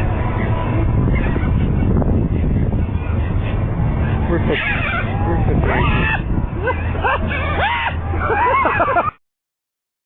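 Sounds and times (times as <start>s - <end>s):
seagulls crying: 1.1s - 9.2s.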